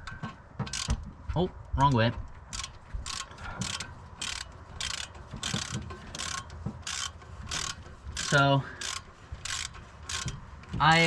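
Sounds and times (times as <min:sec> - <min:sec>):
ratchet wrench clicking: 0:00.7 - 0:01.0, 0:02.5 - 0:10.4.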